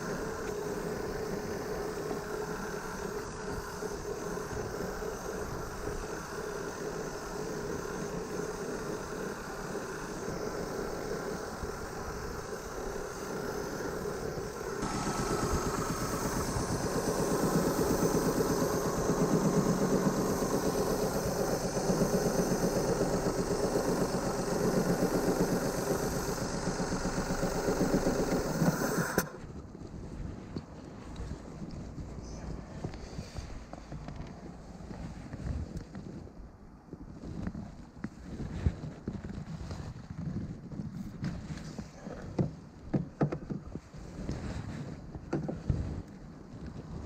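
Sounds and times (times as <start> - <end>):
car engine running: 0.0 - 29.3
loud exhaust note: 14.8 - 29.3.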